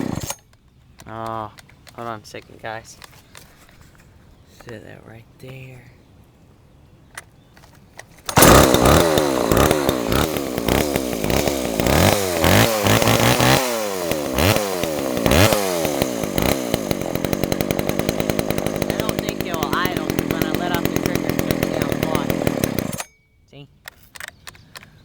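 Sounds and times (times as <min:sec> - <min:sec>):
chainsaw revving: 0:00.0 - 0:00.5, 0:08.3 - 0:23.1.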